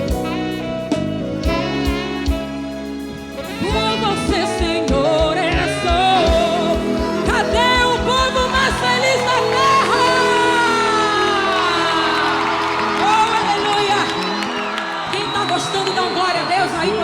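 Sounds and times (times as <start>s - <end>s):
person singing: 3.6s - 14.5s.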